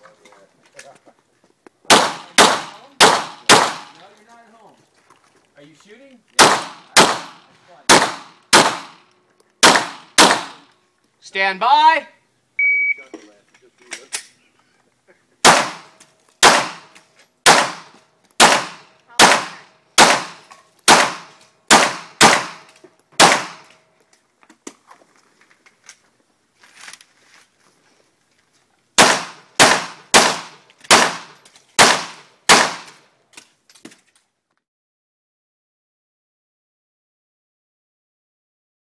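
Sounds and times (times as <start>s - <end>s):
pistol shots: 1.9s - 4.0s, 6.4s - 9.0s, 9.6s - 10.7s, 15.4s - 23.7s, 29.0s - 33.0s.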